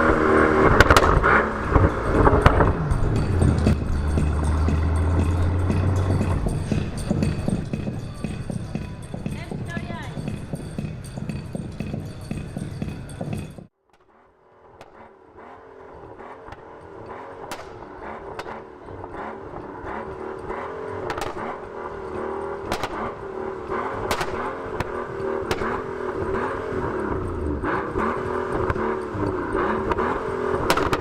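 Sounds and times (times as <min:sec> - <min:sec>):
car engine running low revs: 0:00.0 - 0:31.0
exhaust clicks: 0:00.0 - 0:31.0.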